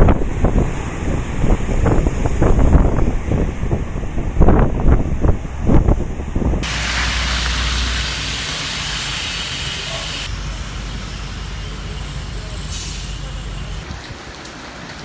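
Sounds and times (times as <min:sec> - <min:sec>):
wind buffeting microphone: 0:00.0 - 0:07.3
hiss of wind-driven rain: 0:06.6 - 0:15.0.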